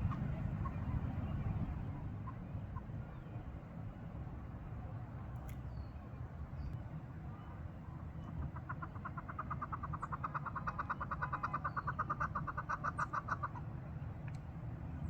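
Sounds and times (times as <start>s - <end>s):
partridge clucking call: 8.4s - 13.6s.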